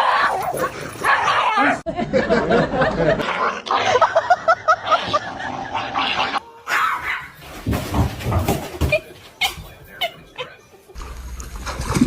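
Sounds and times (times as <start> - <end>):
dogs barking and yipping: 0.0 - 1.8, 3.8 - 7.6.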